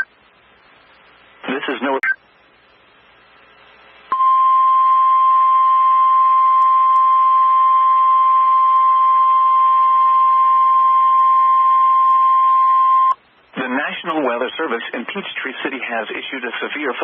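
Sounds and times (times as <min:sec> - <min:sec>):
faint radio hiss: 0:00.0 - 0:05.8, 0:13.2 - 0:17.0.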